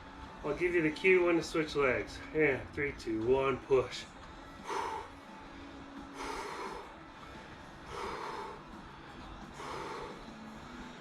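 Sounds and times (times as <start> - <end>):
person breathing out hard: 4.6 - 11.0.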